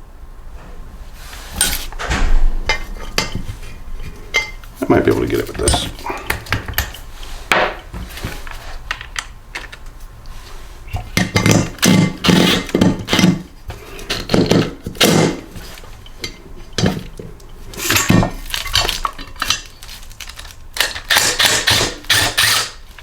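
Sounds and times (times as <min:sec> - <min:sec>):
metal tools clinking and clanking: 0:01.6 - 0:07.0.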